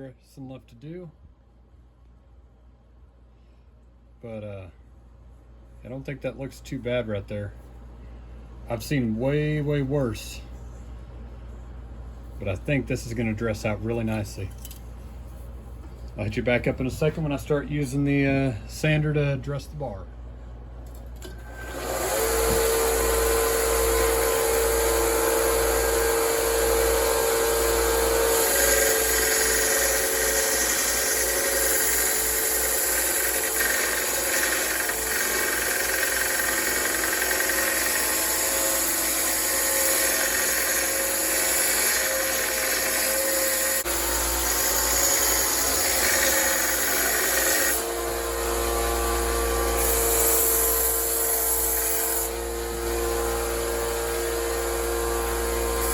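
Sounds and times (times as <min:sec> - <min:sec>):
belt sander grinding steel: 0:21.4 - 0:55.9.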